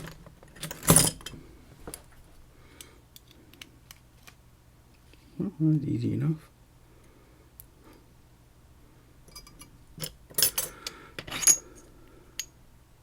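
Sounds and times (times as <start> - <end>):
metal lock parts clinking: 0.0 - 1.3, 9.3 - 11.8.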